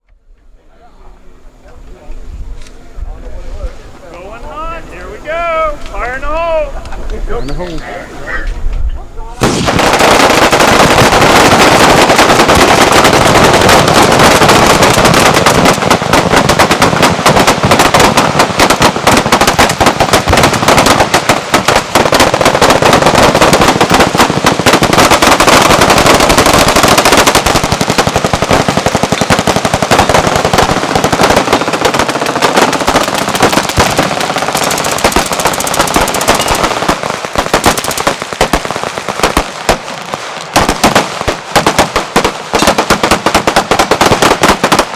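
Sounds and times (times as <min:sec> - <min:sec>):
machine-gun fire: 0:09.4 - 0:44.9.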